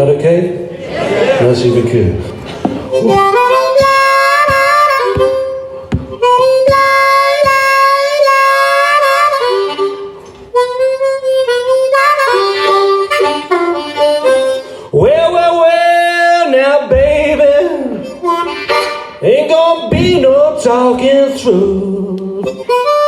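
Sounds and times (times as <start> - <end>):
sharp knock keeping time: 2.5 - 9.9, 19.8 - 21.3
blues harmonica: 2.6 - 23.0.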